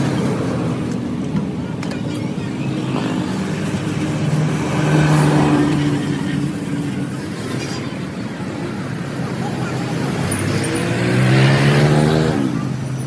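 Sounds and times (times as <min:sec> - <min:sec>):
engine droning hum: 0:00.0 - 0:13.0.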